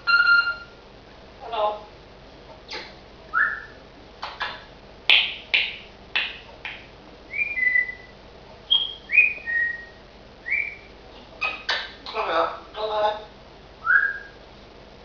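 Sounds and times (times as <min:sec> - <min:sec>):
parrot chirping: 0:00.0 - 0:00.8, 0:02.7 - 0:03.8, 0:06.2 - 0:14.4
parrot whistling: 0:00.0 - 0:00.8, 0:03.3 - 0:03.8, 0:07.3 - 0:08.1, 0:08.7 - 0:11.7, 0:13.8 - 0:14.4.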